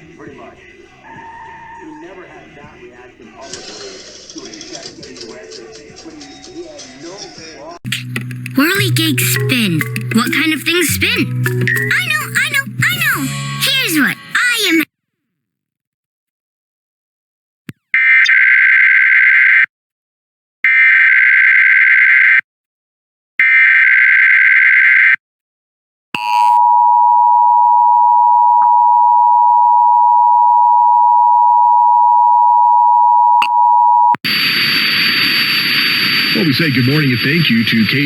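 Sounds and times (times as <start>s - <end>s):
two-tone alert signal: 7.9s - 13.1s
digital data bursts: 35.2s - 38.0s.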